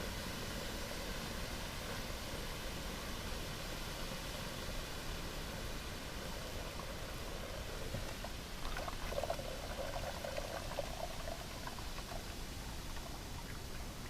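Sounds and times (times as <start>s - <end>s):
splashing and fizzing: 6.0s - 14.0s
liquid pouring into water: 6.5s - 14.0s.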